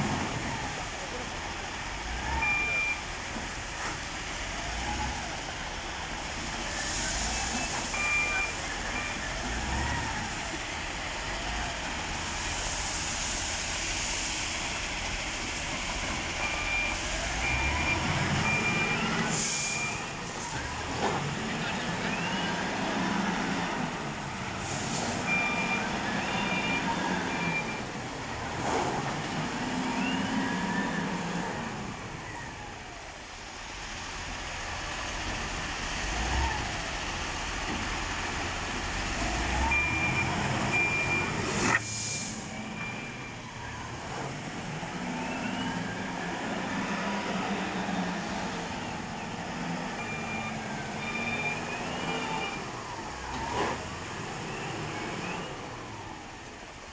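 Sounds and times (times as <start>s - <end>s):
wheel loader engine revving: 0.0s - 56.9s
reversing alarm beeping: 2.4s - 3.1s, 7.3s - 10.1s, 16.4s - 20.2s, 25.2s - 27.9s, 39.5s - 43.5s, 49.2s - 53.2s.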